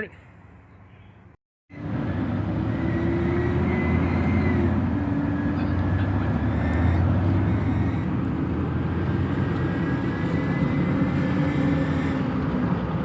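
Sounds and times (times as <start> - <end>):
truck road and drivetrain rumble: 1.7 - 13.0
high-pitched belt squeal: 2.6 - 8.2, 9.5 - 12.4.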